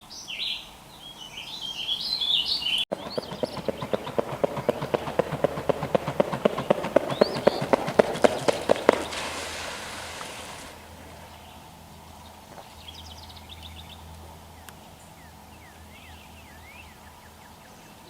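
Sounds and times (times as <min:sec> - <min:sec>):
small birds chirping: 0:00.0 - 0:18.0
woodpecker tapping on wood: 0:02.9 - 0:09.3.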